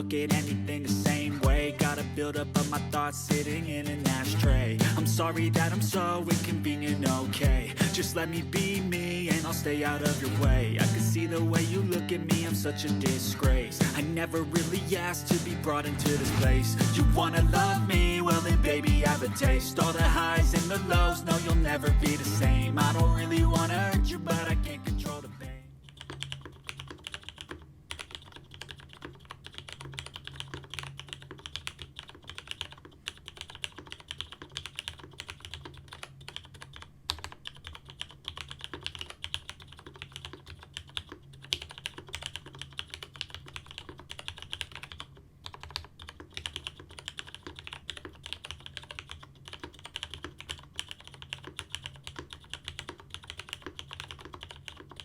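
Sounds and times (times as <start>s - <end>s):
typing on mechanical keyboard: 25.8s - 55.0s.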